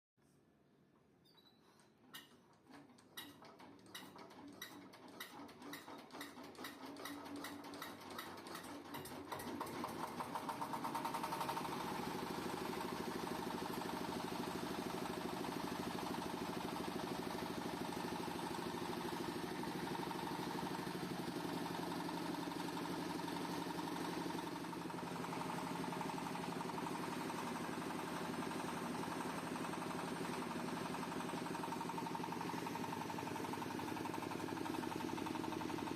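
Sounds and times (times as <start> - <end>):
shredder clicking: 2.2 - 23.3
shredder humming: 8.4 - 35.9.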